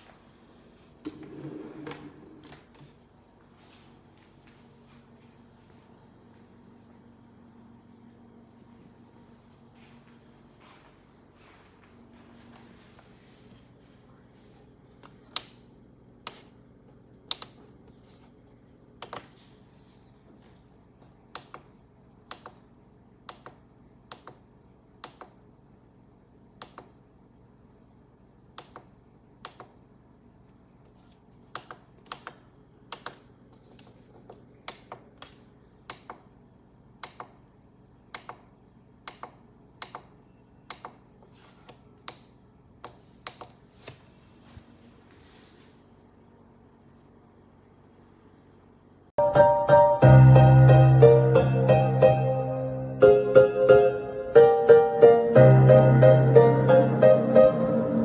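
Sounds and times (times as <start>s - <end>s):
faint steady hum: 0.0s - 58.0s.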